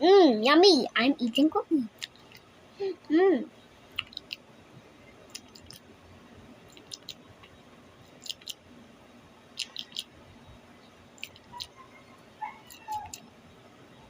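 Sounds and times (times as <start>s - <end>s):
person chewing crunchy cookie: 5.3s - 5.8s, 8.2s - 8.6s.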